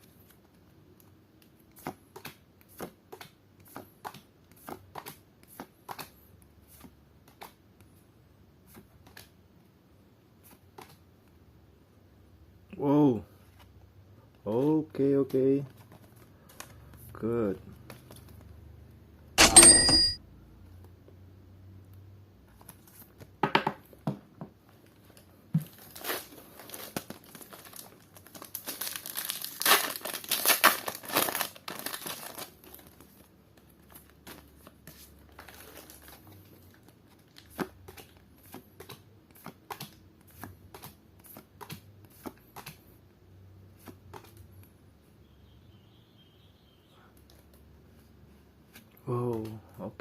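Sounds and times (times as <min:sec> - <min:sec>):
foil wrapper tearing and crinkling: 0:25.8 - 0:33.0.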